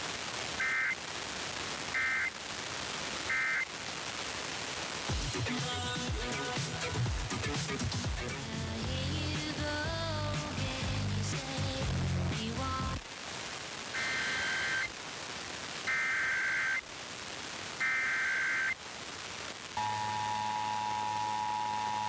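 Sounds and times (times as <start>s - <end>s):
data tone bursts: 14.0s - 14.9s, 15.9s - 16.8s, 17.8s - 18.8s, 19.8s - 22.0s
two-tone attention signal: 19.8s - 22.0s.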